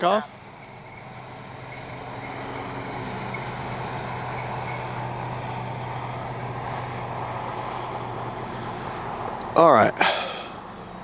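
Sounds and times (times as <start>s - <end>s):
model plane propeller buzzing: 1.2s - 9.6s.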